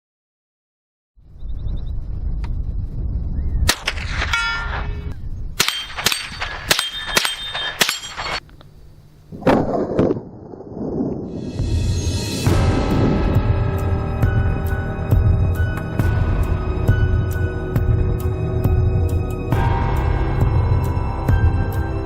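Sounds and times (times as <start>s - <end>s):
low wind rumble: 1.2s - 22.0s
rifle shots: 3.7s - 8.4s
steel plate targets ringing: 3.7s - 8.4s.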